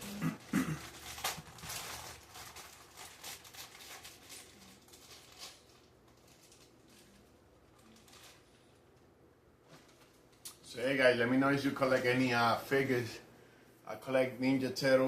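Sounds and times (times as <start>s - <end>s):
packaging rustling: 0.0s - 9.0s.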